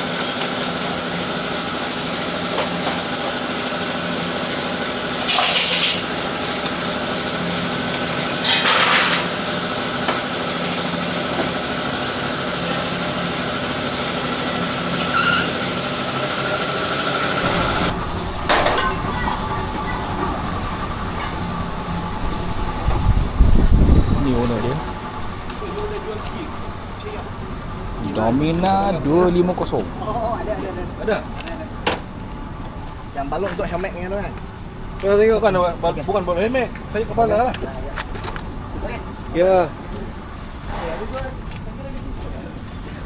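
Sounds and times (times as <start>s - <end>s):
steady mechanical hum: 0.0s - 43.0s
short hisses of air: 5.3s - 6.1s.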